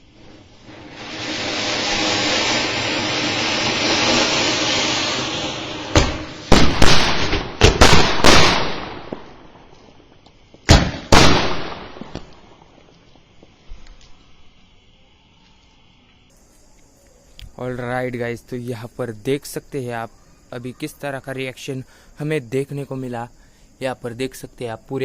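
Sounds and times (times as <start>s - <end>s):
fountain firecracker hissing: 0.0s - 7.2s
firework bangs: 0.0s - 13.9s.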